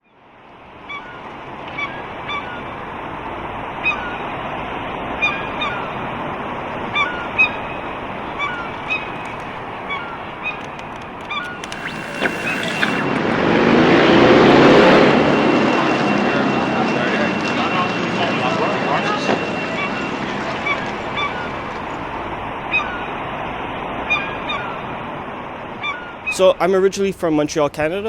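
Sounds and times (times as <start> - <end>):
steady background hiss: 1.4 - 13.1, 19.8 - 25.9
birds short calls: 1.7 - 13.1, 19.8 - 26.0
sharp clicks: 2.1 - 13.7.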